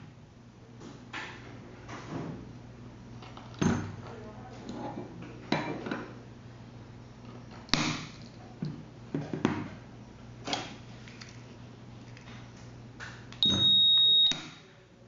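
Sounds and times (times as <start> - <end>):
high electronic beep: 13.4 - 14.4.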